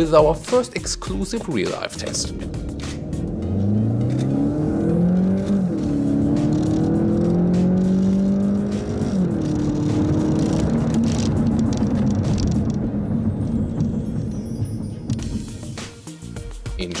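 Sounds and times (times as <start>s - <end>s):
car engine accelerating hard: 2.3s - 15.3s.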